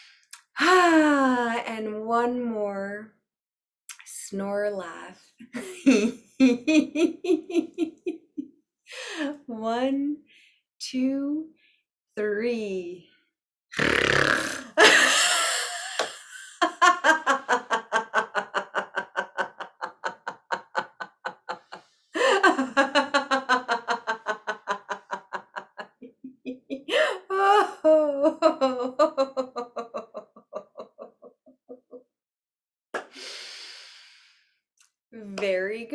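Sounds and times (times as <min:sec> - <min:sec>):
woman laughing in rhythmic pulses: 0:05.6 - 0:08.5, 0:14.6 - 0:32.0
woman snoring: 0:13.8 - 0:14.8.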